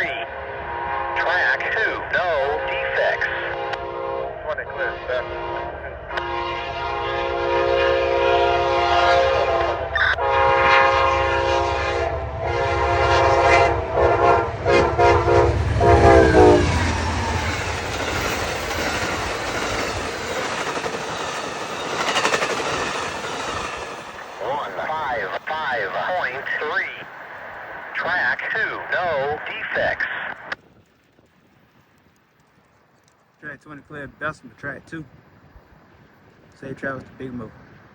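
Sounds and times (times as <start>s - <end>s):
train air horn blasts: 0.0s - 1.3s, 3.3s - 18.3s
wheels on rail roar: 0.0s - 34.4s, 35.1s - 37.9s
clickety-clack of passing cars: 12.1s - 24.4s.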